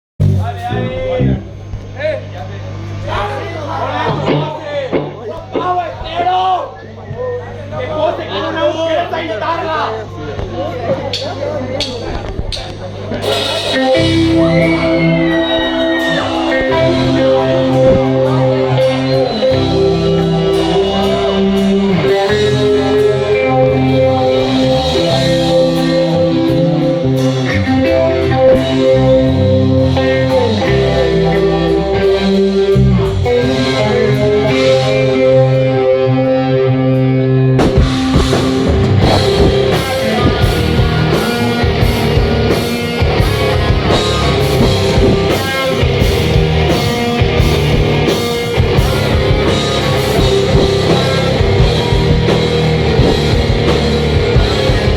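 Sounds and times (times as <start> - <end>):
bass: 0.1 - 54.9
drums: 0.2 - 9.6, 10.3 - 54.9
electric guitar: 4.0 - 6.4, 10.2 - 54.9.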